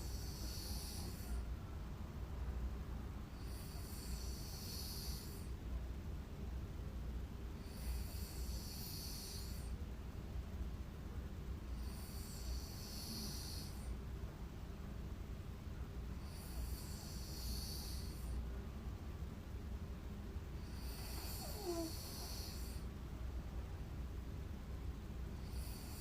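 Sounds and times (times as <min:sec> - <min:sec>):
person snoring: 0:20.7 - 0:22.8.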